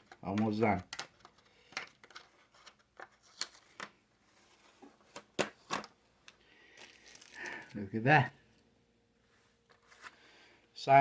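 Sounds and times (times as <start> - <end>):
packaging rustling and clicking: 0.0 - 4.0, 4.6 - 7.8.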